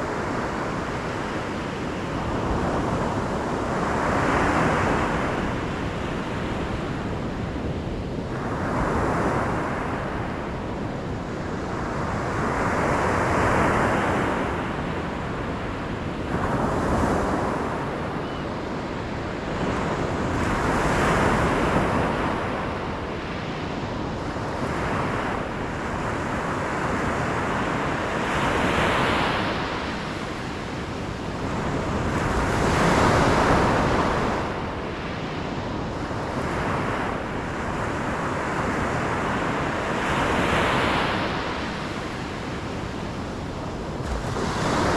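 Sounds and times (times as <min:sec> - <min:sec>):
waves breaking: 0:24.2 - 0:44.9.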